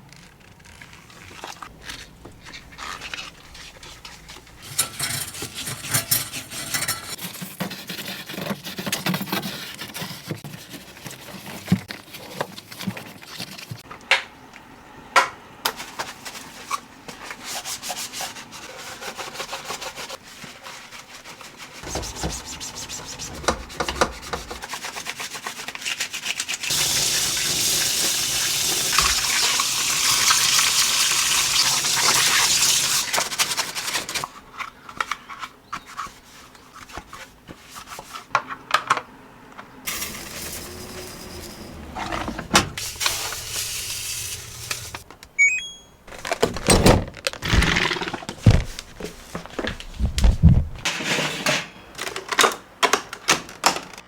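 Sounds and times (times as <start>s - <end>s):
rubbing and scraping: 0.6s - 13.8s, 17.4s - 26.2s, 39.9s - 45.1s, 47.3s - 51.4s
tap water running: 21.8s - 24.7s, 26.7s - 34.2s, 39.9s - 45.1s.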